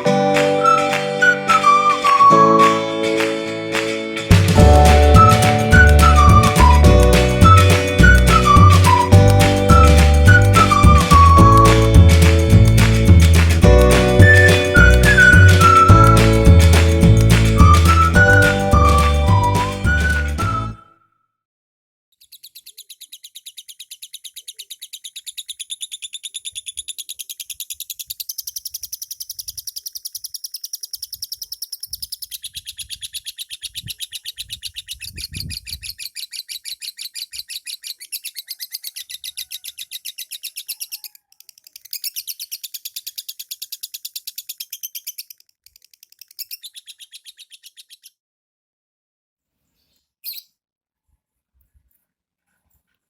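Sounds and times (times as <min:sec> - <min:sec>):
lovebird chirping trills: 0:22.2 - 0:48.1.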